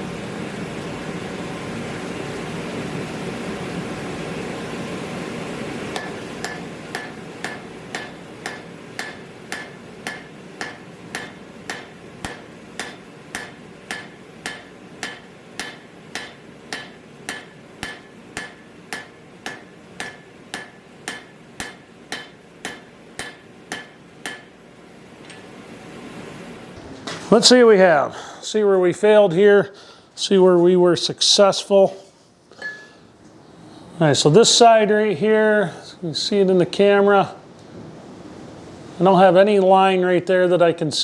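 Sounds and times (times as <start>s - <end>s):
hammer striking steel on anvil: 6.0s - 24.6s, 32.6s - 33.0s.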